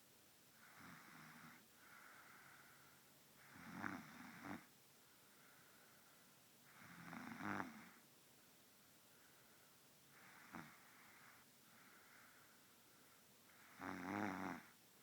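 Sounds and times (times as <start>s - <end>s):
faint breaths: 0.5s - 3.6s, 4.6s - 7.0s, 8.8s - 13.8s
girl snoring: 6.8s - 8.0s, 13.6s - 14.7s.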